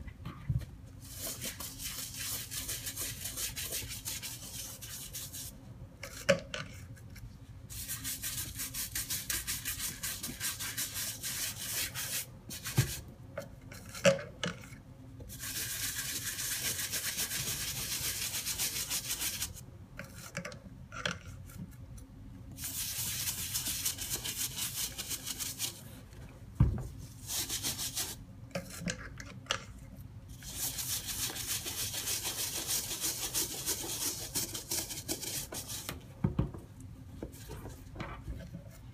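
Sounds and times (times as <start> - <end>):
brush scrubbing a sneaker: 1.0 - 5.5, 7.7 - 12.8, 15.3 - 19.6, 22.6 - 25.9, 27.2 - 28.2, 30.4 - 35.9.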